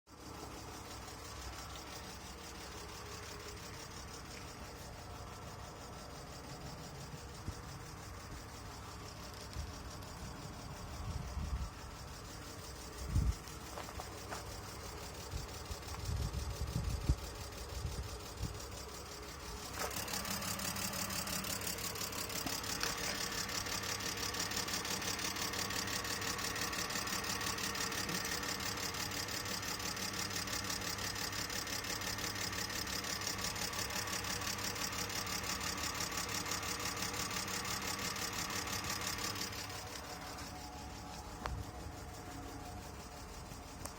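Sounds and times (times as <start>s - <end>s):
car engine idling roughly: 0.2s - 43.9s.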